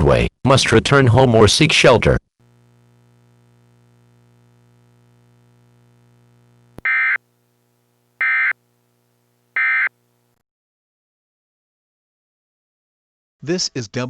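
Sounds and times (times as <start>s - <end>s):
faint steady hum: 2.4s - 10.4s
electronic alert tone bursts: 6.8s - 7.2s, 8.2s - 8.6s, 9.6s - 9.9s.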